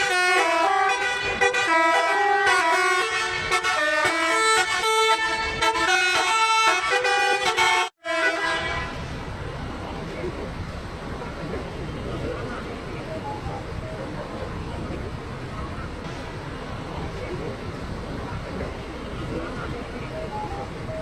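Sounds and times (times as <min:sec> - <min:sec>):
multi-tone air horn melody: 0:00.0 - 0:09.0.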